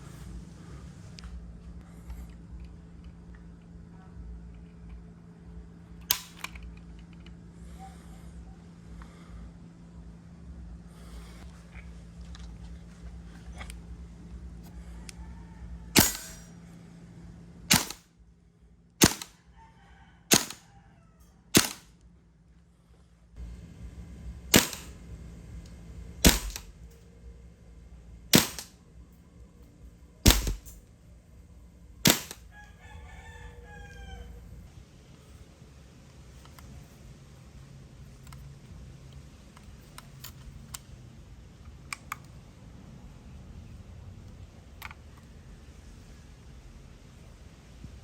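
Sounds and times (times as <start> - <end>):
airsoft rifle shots: 16.0 - 16.5, 17.7 - 18.1, 19.0 - 19.4, 20.3 - 20.6, 21.5 - 21.9, 24.5 - 25.0, 26.2 - 26.8, 28.3 - 28.8, 30.2 - 30.8, 32.0 - 32.5.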